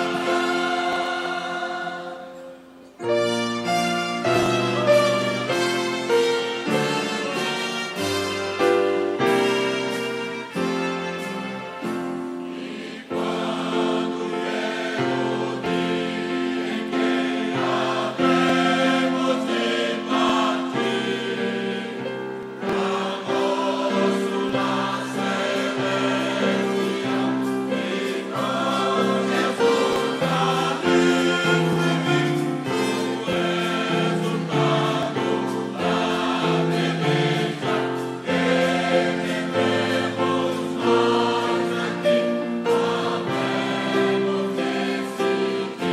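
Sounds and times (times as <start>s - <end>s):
choir singing gospel: 0.0s - 45.9s.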